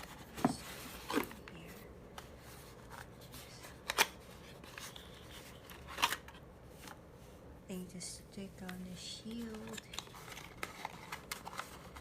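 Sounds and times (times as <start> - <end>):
packaging rustling: 9.3 - 12.0.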